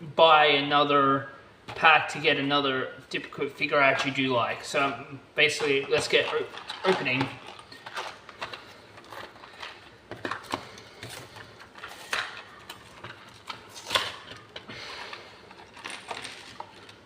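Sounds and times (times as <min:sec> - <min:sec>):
plastic packaging crinkling: 0:04.0 - 0:17.0
packaging tearing: 0:06.1 - 0:17.0.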